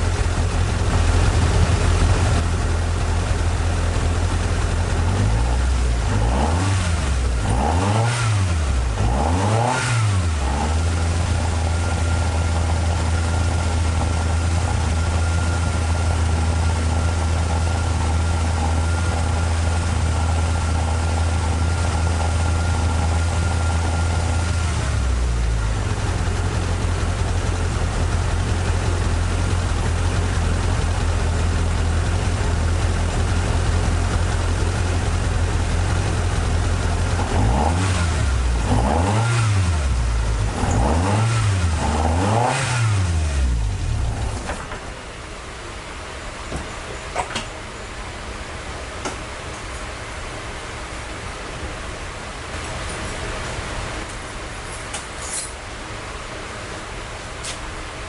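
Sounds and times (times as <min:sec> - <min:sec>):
car engine idling: 0:00.0 - 0:42.4, 0:43.0 - 0:54.8
engine revving blips: 0:06.1 - 0:12.7, 0:37.2 - 0:43.8.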